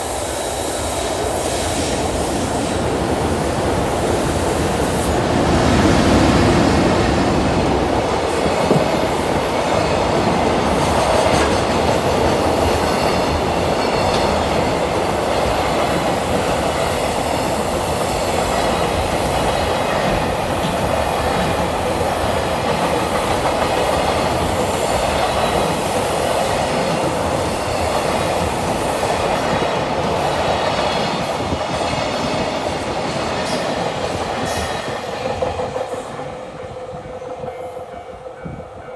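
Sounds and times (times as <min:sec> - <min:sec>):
train wheel squeal: 0:09.7 - 0:38.9.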